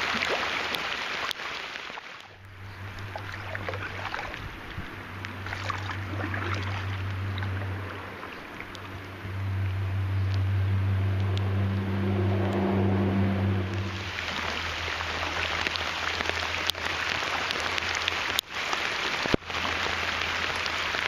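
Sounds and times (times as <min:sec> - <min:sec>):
paddle splashing water: 0:00.0 - 0:21.0
raindrops pattering: 0:00.0 - 0:21.0
low steady hum: 0:02.3 - 0:18.1.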